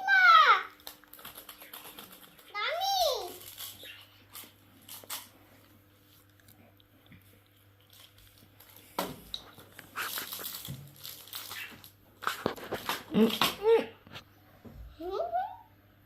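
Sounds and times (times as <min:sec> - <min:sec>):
crunchy biting and chewing: 0:03.4 - 0:13.4.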